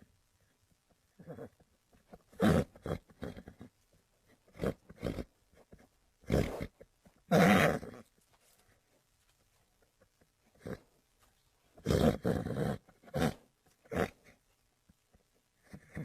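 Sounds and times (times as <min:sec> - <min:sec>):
horse breathy snorts: 0:06.3 - 0:06.8.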